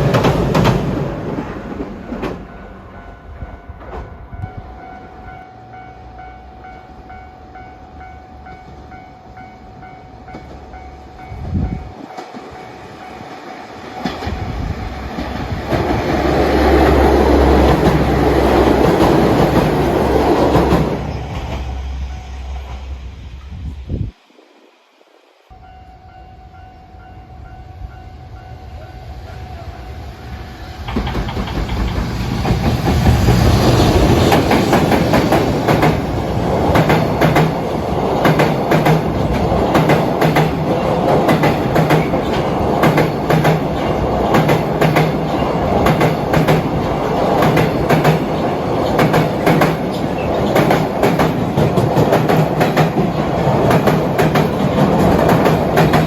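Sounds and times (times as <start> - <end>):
train rumbling past: 0.0 - 56.0
wheels clicking over rail joints: 30.8 - 56.0.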